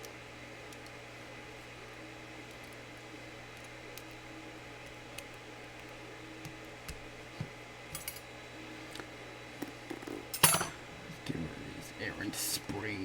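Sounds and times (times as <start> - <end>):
metal tools clinking: 10.3 - 10.8.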